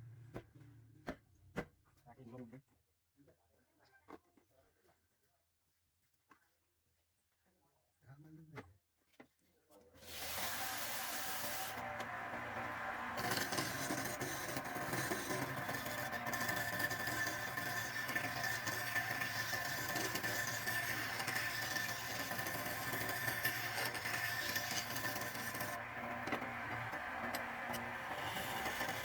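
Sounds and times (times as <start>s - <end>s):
woodworking machine humming and whining: 10.0s - 29.0s.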